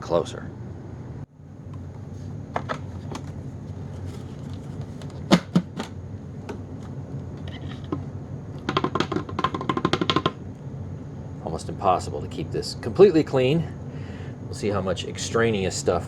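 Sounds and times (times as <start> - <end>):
plastic dust bin clicks and knocks: 2.6 - 3.4, 4.5 - 6.6
rattling taps: 8.7 - 10.4.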